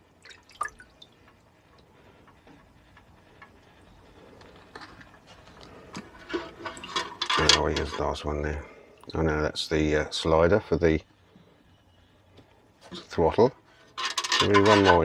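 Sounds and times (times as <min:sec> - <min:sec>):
small metal parts clicking: 0:14.0 - 0:15.0.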